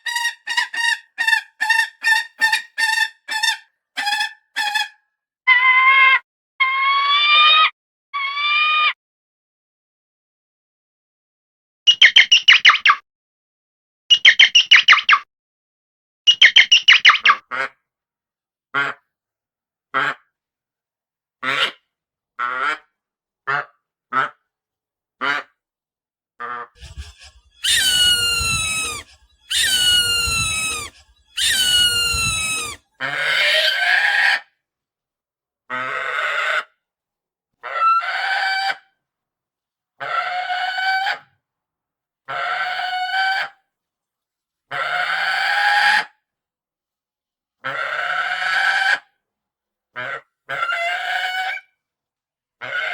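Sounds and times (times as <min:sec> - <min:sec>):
falcon chattering calls: 0:26.8 - 0:32.8.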